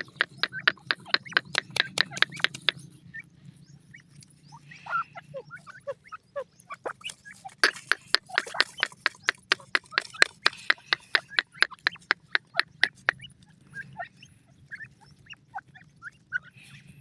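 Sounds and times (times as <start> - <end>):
rapid sharp ticking: 0.0 - 2.8, 7.6 - 13.2.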